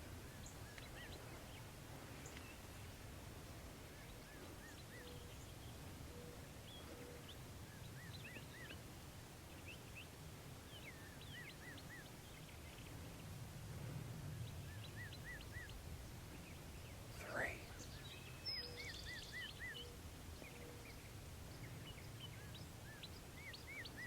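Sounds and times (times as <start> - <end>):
songbirds singing: 0.0 - 13.5, 14.2 - 24.0
faint low outdoor rumble: 0.0 - 24.0.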